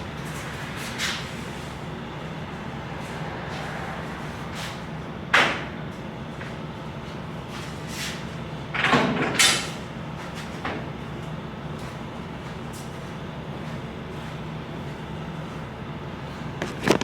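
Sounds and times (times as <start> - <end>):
low engine hum: 0.0 - 8.8.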